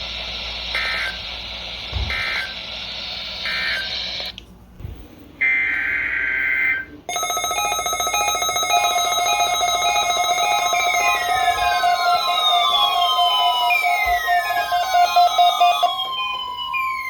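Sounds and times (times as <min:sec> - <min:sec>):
electronic alert tone: 0:07.1 - 0:16.2.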